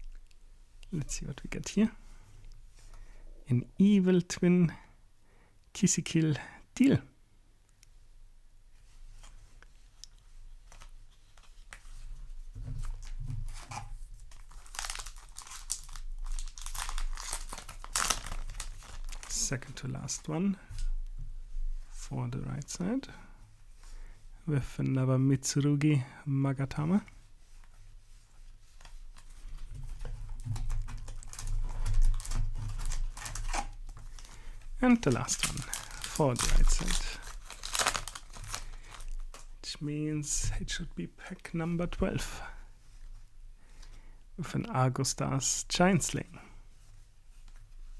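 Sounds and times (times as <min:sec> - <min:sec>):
foil wrapper crinkling and tearing: 0:13.5 - 0:19.6, 0:29.9 - 0:39.5.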